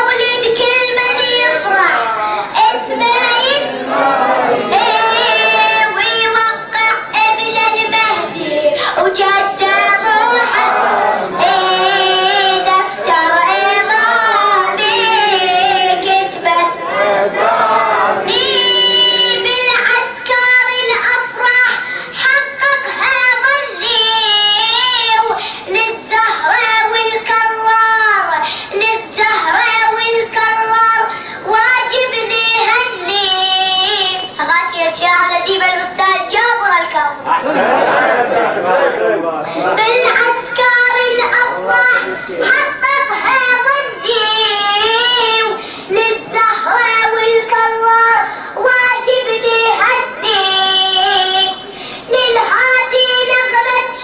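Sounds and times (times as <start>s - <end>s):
person singing devotional verses: 7.4s - 21.5s.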